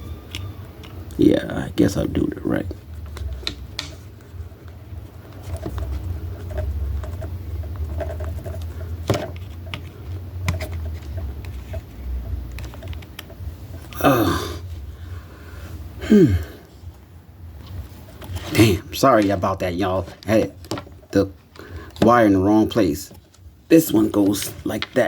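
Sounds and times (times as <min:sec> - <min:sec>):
low steady hum: 0:00.0 - 0:25.0
plastic parts clicking and tapping: 0:03.0 - 0:14.0
short falling vocal sounds: 0:14.0 - 0:14.6.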